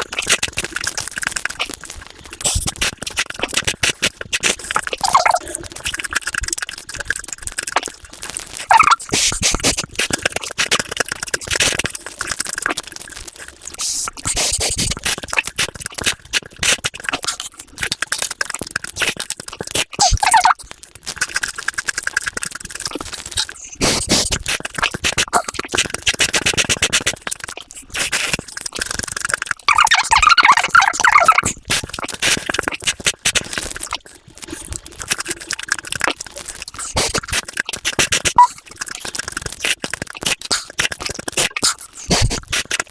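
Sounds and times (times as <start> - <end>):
sped-up crunching and chewing: 0.0 - 42.9.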